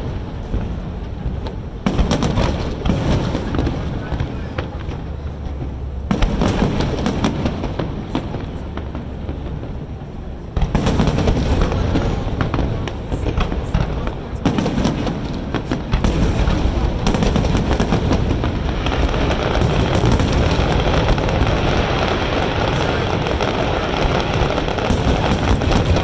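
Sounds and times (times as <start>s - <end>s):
fireworks exploding: 0.0s - 26.0s.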